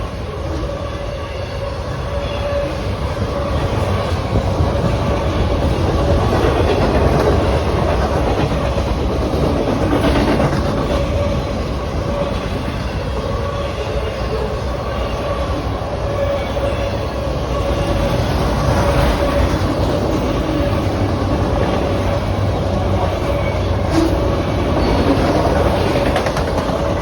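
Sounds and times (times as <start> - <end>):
train wheels clattering: 3.8 - 13.0, 17.9 - 27.0.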